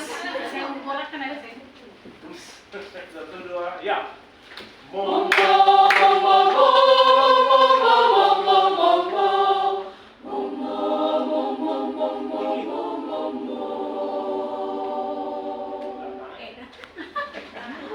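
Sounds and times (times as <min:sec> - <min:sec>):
choir singing: 0:04.9 - 0:16.4.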